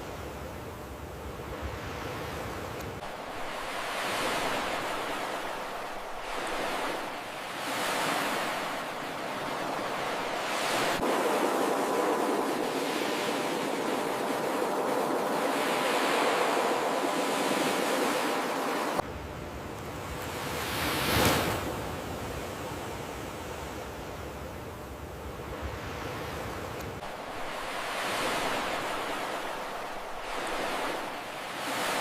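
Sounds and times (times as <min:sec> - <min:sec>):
ocean surf on beach: 0:00.0 - 0:24.5, 0:25.3 - 0:32.0.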